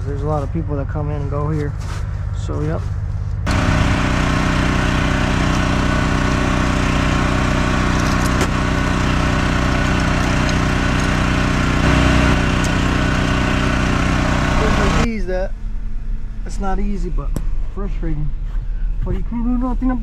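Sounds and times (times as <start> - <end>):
portable generator engine running: 3.5 - 15.1.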